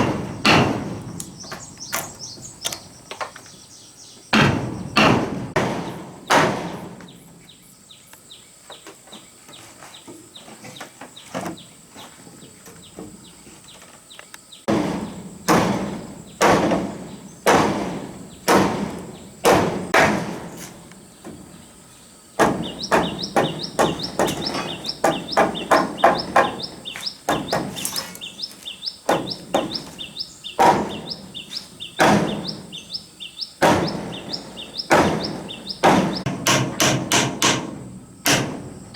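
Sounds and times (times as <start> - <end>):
tool striking wood: 0.0 - 1.3, 4.4 - 7.1, 14.7 - 20.7, 22.4 - 28.2, 30.6 - 31.2, 32.0 - 32.6, 33.6 - 38.6.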